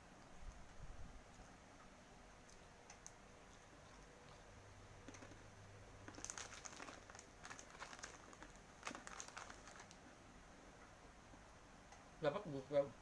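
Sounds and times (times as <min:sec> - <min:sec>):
plastic wrapper crinkling: 0:05.0 - 0:10.0.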